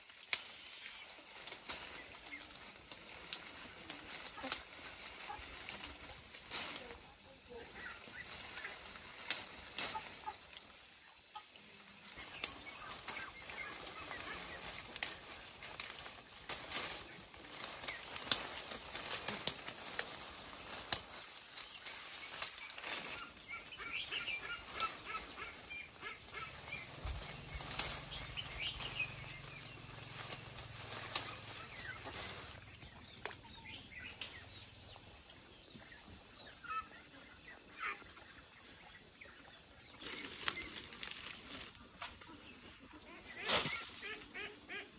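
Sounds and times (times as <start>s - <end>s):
sharp snaps and clicks: 0.3s - 0.5s, 18.2s - 18.4s
high-pitched insect drone: 0.6s - 38.8s
birds calling: 7.4s - 44.9s.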